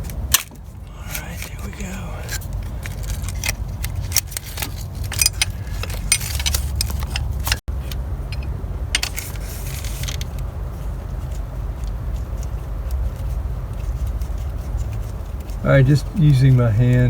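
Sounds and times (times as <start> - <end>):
steady low rumble: 0.0 - 16.0
wrench clinking on bolt: 5.1 - 7.6.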